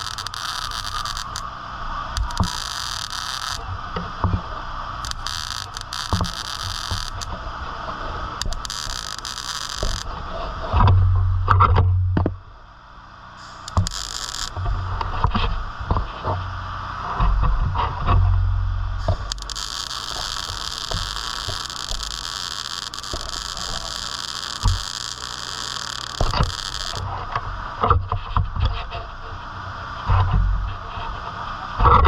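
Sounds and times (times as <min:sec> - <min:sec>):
welding arc hissing: 0:00.0 - 0:10.6, 0:13.4 - 0:15.3, 0:19.0 - 0:27.2
low steady hum: 0:00.0 - 0:32.0.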